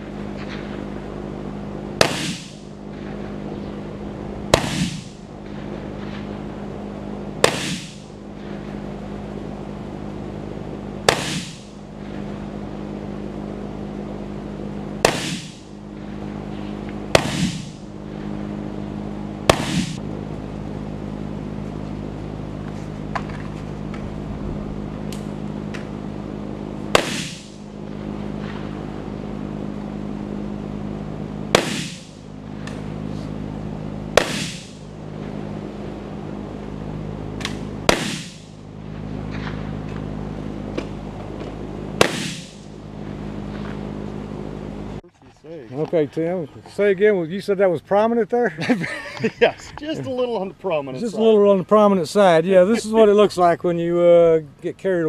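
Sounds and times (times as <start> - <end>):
steady low hum: 0.0 - 55.0
loud gunshots: 2.0 - 2.7, 4.5 - 5.2, 7.4 - 8.1, 11.0 - 11.8, 15.0 - 15.8, 17.1 - 17.8, 19.4 - 20.0, 26.9 - 27.7, 31.5 - 32.2, 34.1 - 34.9, 37.8 - 38.6, 42.0 - 42.7.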